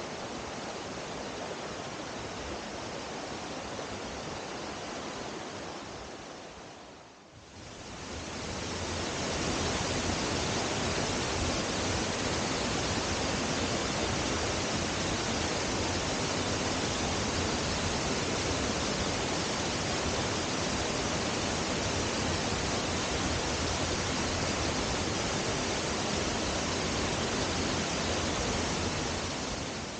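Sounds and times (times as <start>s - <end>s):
waterfall rushing: 7.8s - 29.9s.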